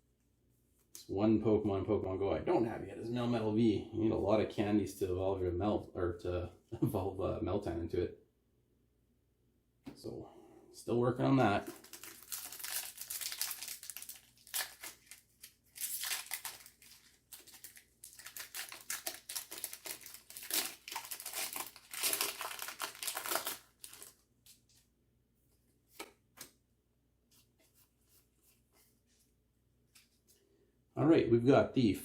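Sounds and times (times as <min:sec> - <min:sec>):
foil wrapper tearing and crinkling: 0:11.6 - 0:24.2.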